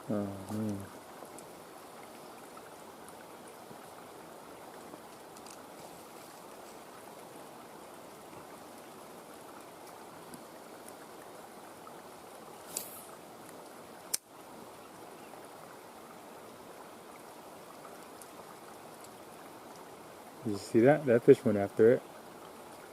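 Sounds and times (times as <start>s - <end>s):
creek water over rapids: 0.0s - 22.9s
brief hiss: 12.6s - 13.2s.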